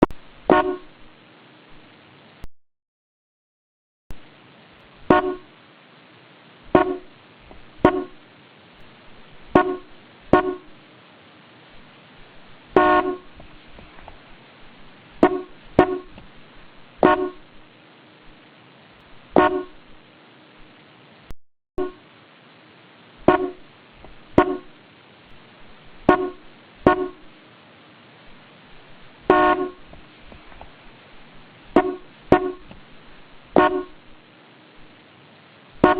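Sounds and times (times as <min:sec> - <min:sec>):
car horn toots: 0:00.0 - 0:01.0, 0:05.1 - 0:05.5, 0:06.8 - 0:07.1, 0:07.8 - 0:08.2, 0:09.5 - 0:10.7, 0:12.8 - 0:13.6, 0:15.2 - 0:16.2, 0:17.0 - 0:17.5, 0:19.3 - 0:19.8, 0:23.2 - 0:23.6, 0:24.4 - 0:24.7, 0:26.0 - 0:27.3, 0:29.3 - 0:29.9, 0:31.7 - 0:32.7, 0:33.6 - 0:34.0
faint steady hiss: 0:00.0 - 0:02.5, 0:04.1 - 0:35.9.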